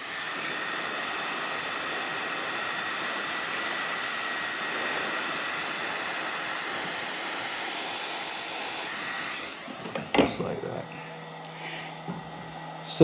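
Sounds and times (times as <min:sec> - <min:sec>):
faint steady whine: 0:00.0 - 0:13.0
heat gun blowing hot air: 0:00.0 - 0:13.0.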